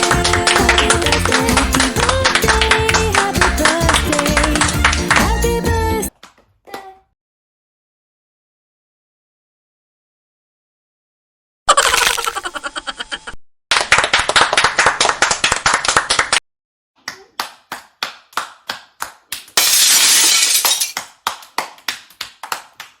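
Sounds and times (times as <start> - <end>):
hand clapping: 0.0 - 6.5, 17.0 - 19.6, 20.9 - 23.0.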